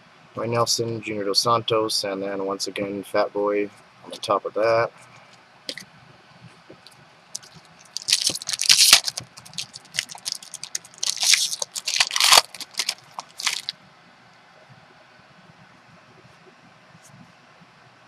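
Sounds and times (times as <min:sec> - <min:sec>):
cards and packaging rustling: 0:07.4 - 0:13.7.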